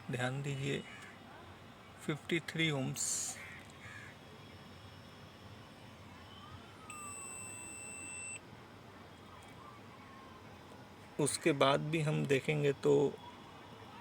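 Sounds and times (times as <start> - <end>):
multimeter beep: 6.9 - 8.4.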